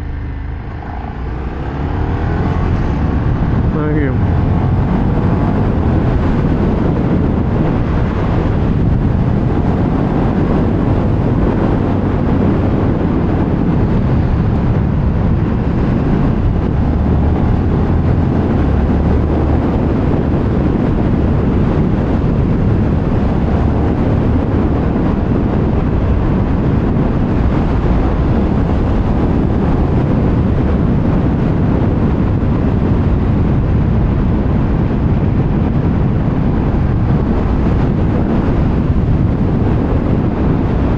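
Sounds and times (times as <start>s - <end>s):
wind rushing over microphone: 0.0s - 40.9s.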